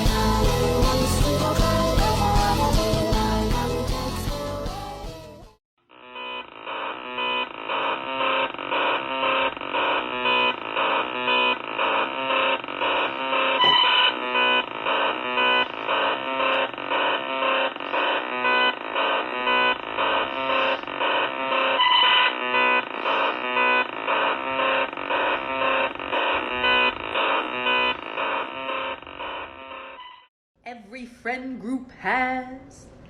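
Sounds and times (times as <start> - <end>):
pulsing electronic buzz: 5.9 - 30.3.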